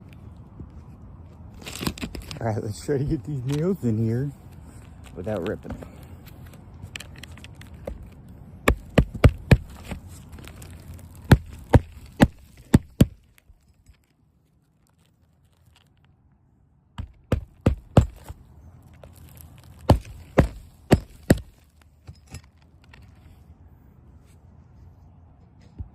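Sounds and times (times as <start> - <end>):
hammer striking nails: 8.6 - 9.9, 11.3 - 13.2, 17.0 - 18.4, 19.9 - 22.4.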